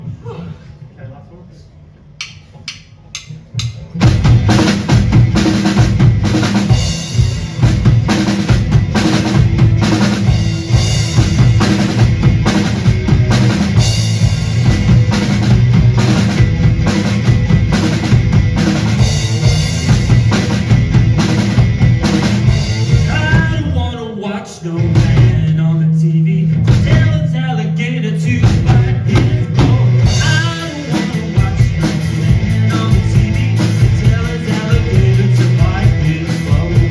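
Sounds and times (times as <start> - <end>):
drum kit played hard and fast: 3.6 - 23.8, 24.8 - 25.6, 26.5 - 27.4, 28.2 - 36.9.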